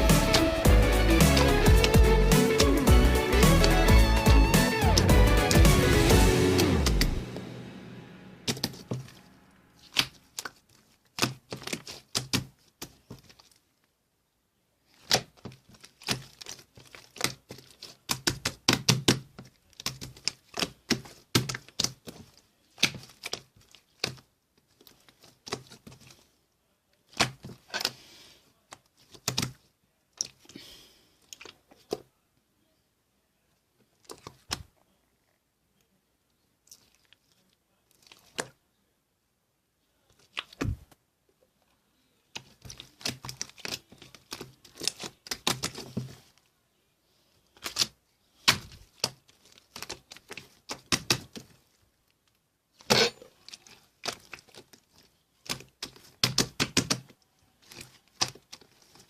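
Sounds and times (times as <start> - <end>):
background music: 0.0 - 9.8
slime clicking and popping: 50.7 - 51.3.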